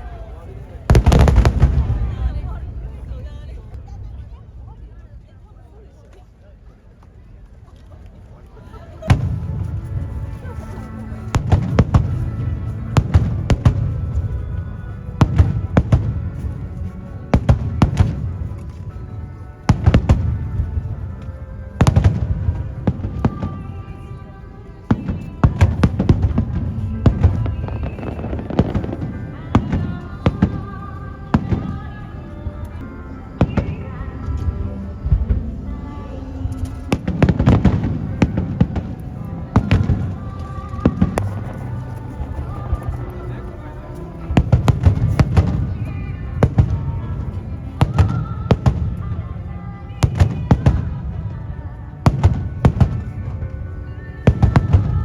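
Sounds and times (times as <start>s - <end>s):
music playing: 0.0s - 3.8s, 8.5s - 55.0s
fireworks bursting: 0.9s - 3.2s, 9.1s - 19.0s, 19.6s - 24.2s, 24.8s - 32.8s, 33.4s - 49.0s.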